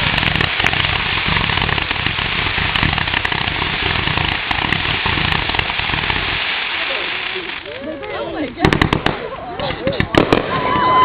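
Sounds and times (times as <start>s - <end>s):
fireworks crackling: 0.0s - 11.0s.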